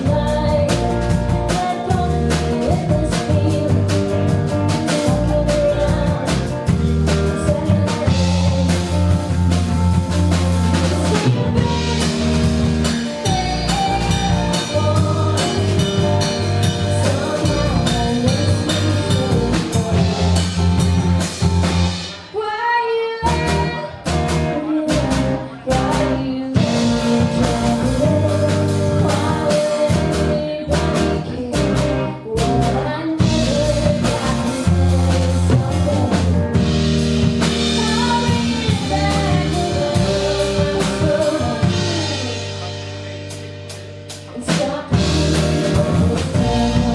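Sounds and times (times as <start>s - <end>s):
sliding guitar line: 0.0s - 22.2s, 44.2s - 46.9s
live rock band playing: 0.0s - 46.9s.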